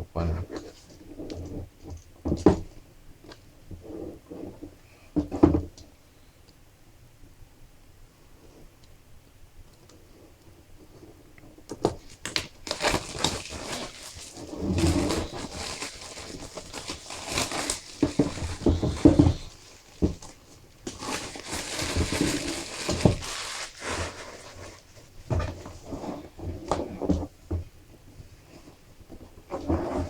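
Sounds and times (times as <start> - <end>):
packaging rustling and crinkling: 11.9 - 26.0
light knocks and thumps: 17.8 - 21.0.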